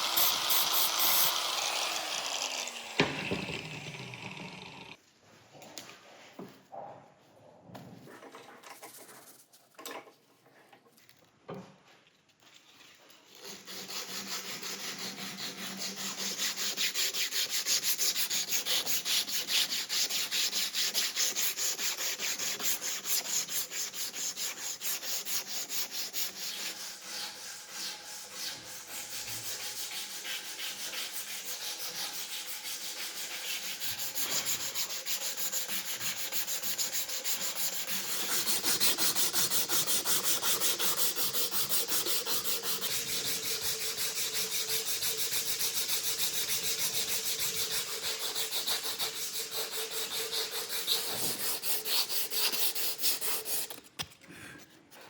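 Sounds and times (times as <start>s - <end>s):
sandpaper rubbing on a knife: 13.2s - 53.9s.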